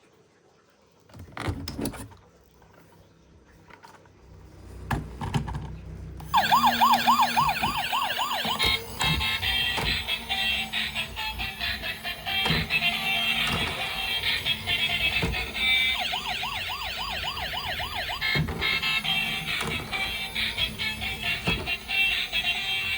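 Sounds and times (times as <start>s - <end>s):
toy electronic siren wailing: 6.2s - 22.9s
electronic beeping: 6.3s - 8.7s, 16.0s - 18.4s.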